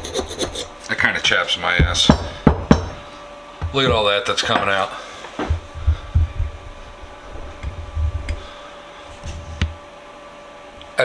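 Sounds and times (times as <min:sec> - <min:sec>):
hand tool scratching metal: 0:00.0 - 0:02.5
faint hum: 0:00.0 - 0:11.0
low knocks: 0:05.4 - 0:08.5.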